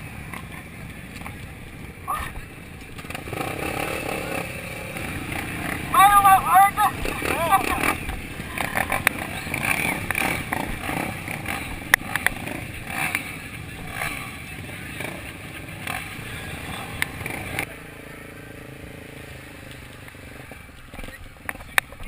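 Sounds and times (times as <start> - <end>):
dirt bike engines running: 0.0 - 22.0
voices: 0.6 - 3.4, 4.1 - 18.1.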